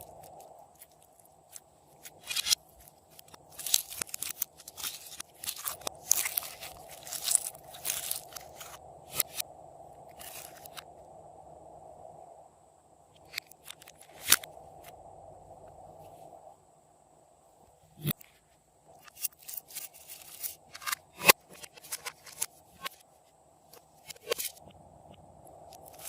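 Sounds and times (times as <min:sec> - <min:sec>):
slime crackling and popping: 0:00.0 - 0:08.8.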